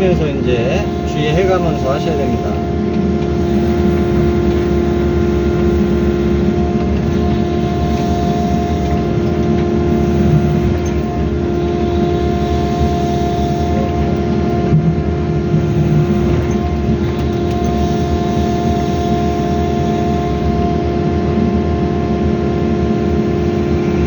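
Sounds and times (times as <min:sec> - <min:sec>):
excavator diesel engine: 0:00.0 - 0:24.0.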